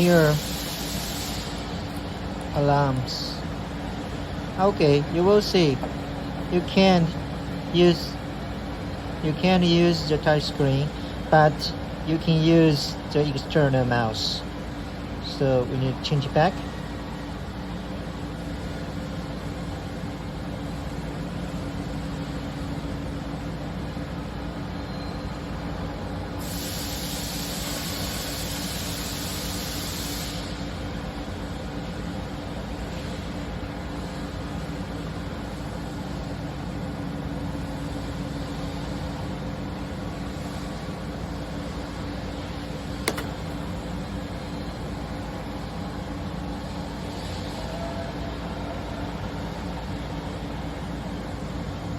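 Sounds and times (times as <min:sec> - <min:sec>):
loud even hiss: 0:00.0 - 0:05.8, 0:26.4 - 0:31.0
steady machine hum: 0:00.0 - 0:28.0, 0:30.7 - 0:47.5
sharp click: 0:43.0 - 0:43.6.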